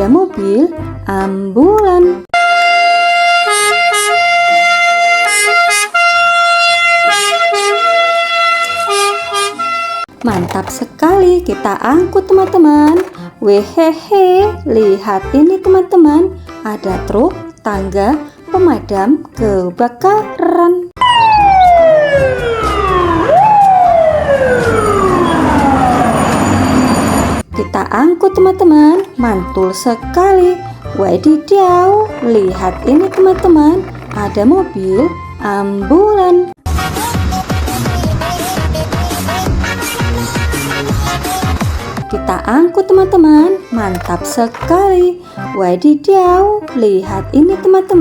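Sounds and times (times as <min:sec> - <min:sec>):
electronic ambulance siren: 0:02.4 - 0:10.1, 0:21.0 - 0:27.4.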